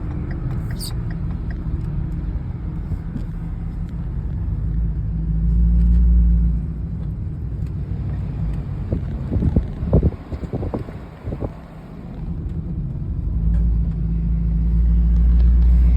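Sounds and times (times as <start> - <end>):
diesel truck engine running: 6.4 - 15.9.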